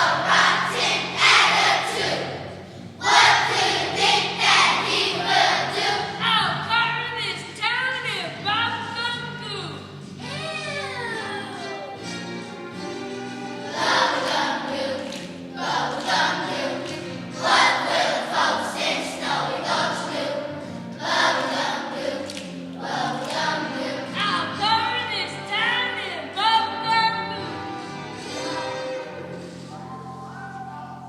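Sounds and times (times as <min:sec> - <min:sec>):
children's choir singing: 0:00.0 - 0:06.7, 0:13.4 - 0:27.4, 0:28.0 - 0:31.0
instrumental accompaniment: 0:00.0 - 0:31.0.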